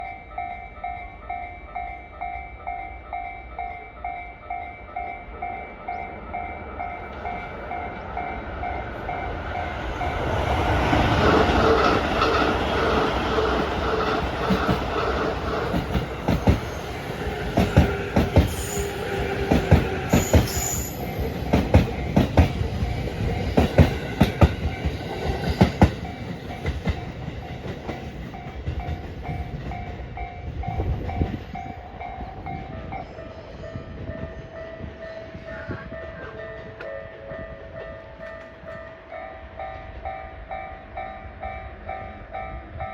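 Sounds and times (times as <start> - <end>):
train wheels clacking on rail joints: 5.9 - 33.3.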